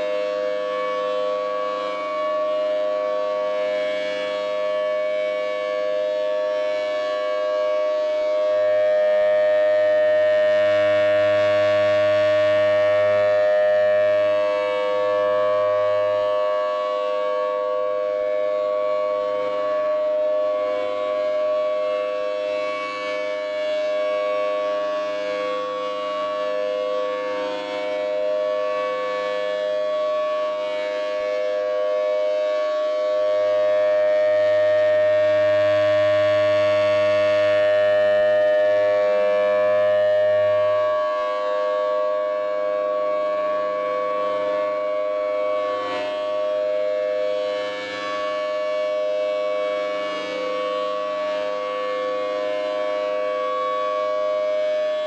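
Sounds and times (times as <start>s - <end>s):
warning siren wailing: 0.0s - 55.0s.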